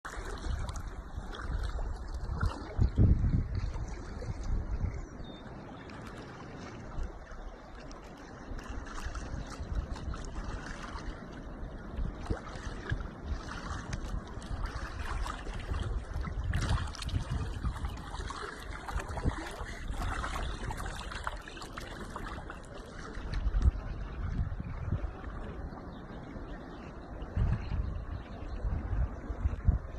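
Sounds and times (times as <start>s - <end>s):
water running and trickling: 12.3s - 24.6s.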